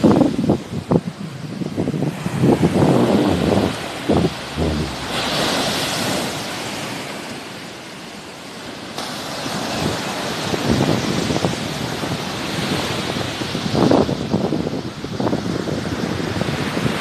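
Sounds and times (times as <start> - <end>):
wind buffeting microphone: 0.0 - 6.6
sea waves breaking on shore: 0.2 - 13.8.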